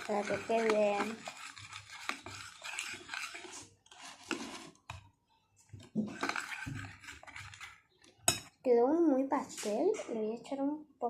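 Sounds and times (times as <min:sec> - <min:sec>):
spoon scraping thick mixture: 0:00.0 - 0:08.6.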